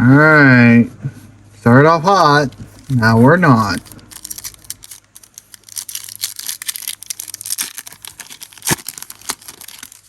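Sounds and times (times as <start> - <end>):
foil wrapper crinkling and tearing: 2.8 - 10.0.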